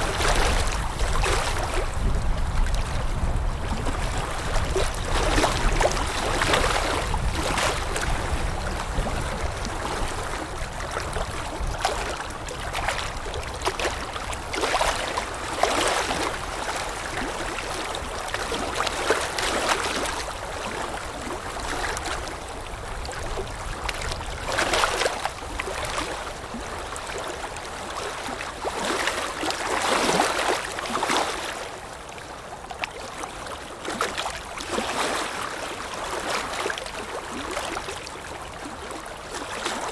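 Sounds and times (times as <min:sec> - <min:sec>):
low wind rumble: 0:00.0 - 0:13.5
water lapping: 0:00.0 - 0:39.9.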